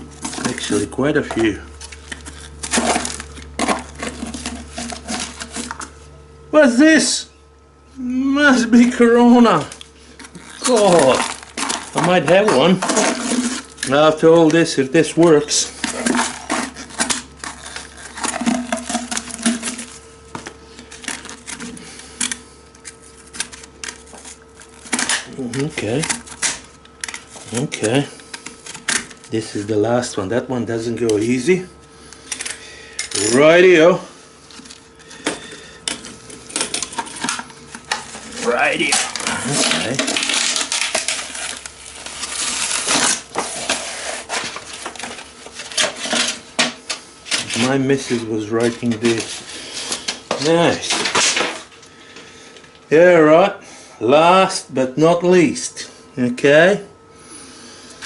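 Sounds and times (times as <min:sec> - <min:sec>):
cardboard rustling and scraping: 0:00.0 - 0:06.1, 0:09.9 - 0:29.8, 0:36.0 - 0:51.8
faint steady hum: 0:00.0 - 0:58.0.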